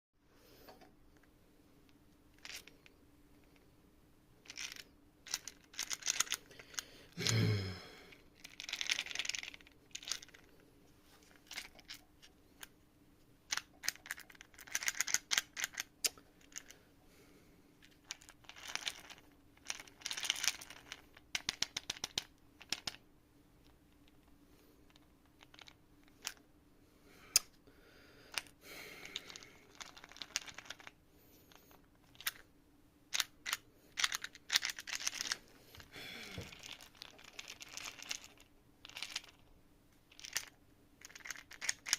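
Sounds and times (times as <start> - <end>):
plastic puzzle clicking and rattling: 2.3 - 2.9, 4.4 - 6.8, 8.4 - 10.6, 11.2 - 12.0, 13.5 - 16.7, 17.9 - 23.0, 24.9 - 26.4, 29.1 - 31.0, 31.9 - 32.4, 33.1 - 39.5, 40.1 - 41.9.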